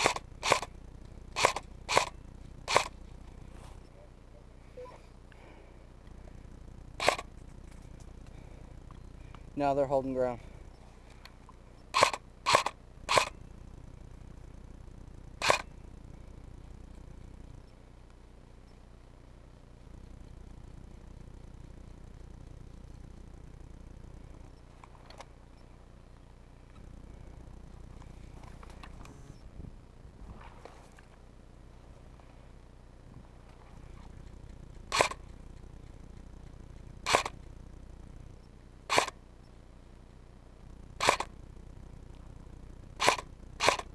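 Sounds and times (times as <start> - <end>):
airsoft rifle shots: 0.0 - 0.7, 1.3 - 3.0, 7.0 - 7.3, 11.9 - 13.4, 15.4 - 15.8, 34.9 - 35.2, 37.0 - 37.4, 38.9 - 39.2, 41.0 - 41.4, 43.0 - 43.9.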